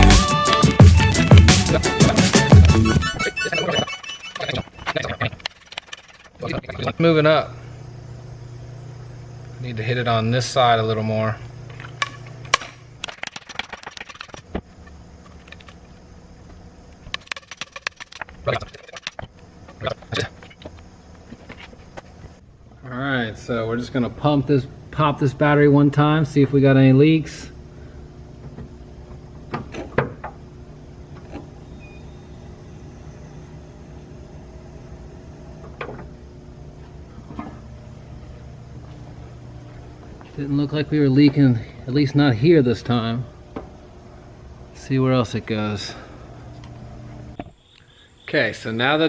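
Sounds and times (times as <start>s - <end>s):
low hum: 0.0s - 47.6s
small tools clicking and tapping: 17.0s - 20.8s.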